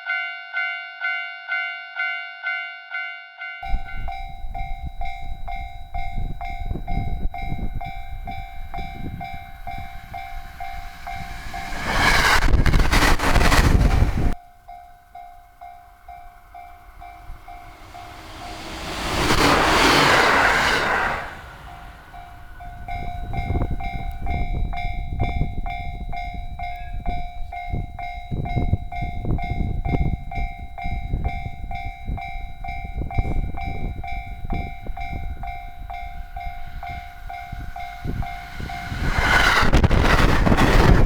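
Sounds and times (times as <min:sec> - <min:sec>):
train rumbling past: 0:03.6 - 0:14.4, 0:15.0 - 0:41.0
train wheels clicking over rails: 0:08.6 - 0:14.4, 0:17.4 - 0:22.8.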